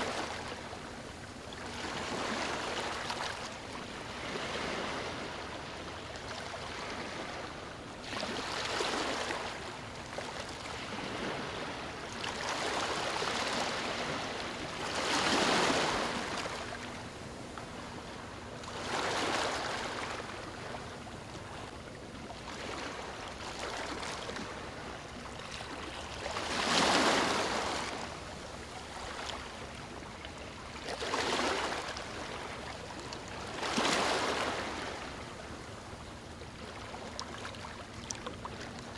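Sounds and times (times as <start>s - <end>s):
ocean waves breaking on beach: 1.7s - 5.8s, 10.5s - 18.0s, 25.8s - 29.4s.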